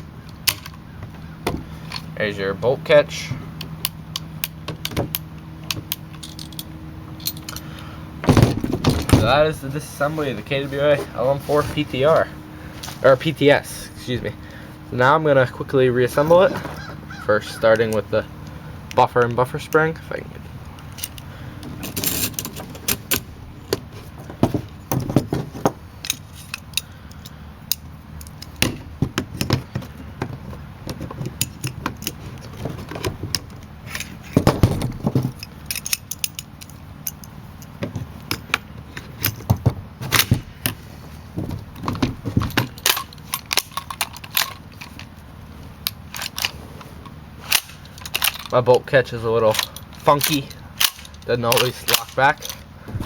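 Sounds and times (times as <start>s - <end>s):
metal gun parts clicking: 0.3s - 0.9s, 3.6s - 7.8s, 26.0s - 28.7s, 35.3s - 39.5s, 41.8s - 45.2s, 45.8s - 48.7s, 49.4s - 52.7s.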